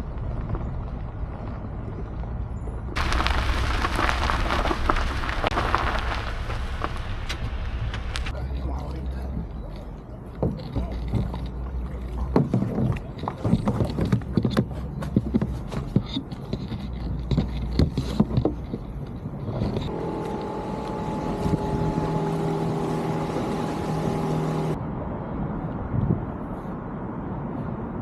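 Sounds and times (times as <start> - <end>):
paddle splashing and knocking: 10.4 - 18.9
steady motor hum: 19.9 - 24.8.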